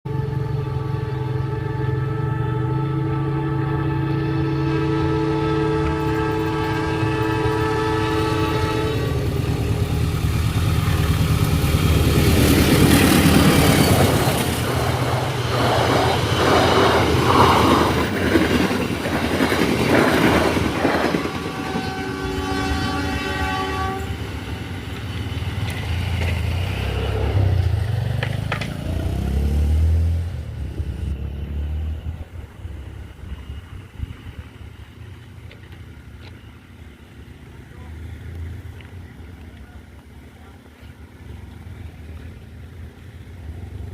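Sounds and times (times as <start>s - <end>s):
locomotive horn blast: 0.1s - 10.6s, 20.3s - 24.3s
train wheels rolling and clattering: 9.1s - 22.5s, 24.1s - 29.1s.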